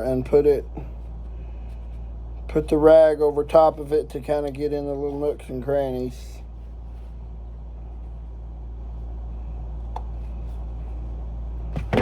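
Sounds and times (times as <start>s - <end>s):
steady low hum: 0.0s - 12.0s
knocks and rubbing: 11.7s - 12.0s.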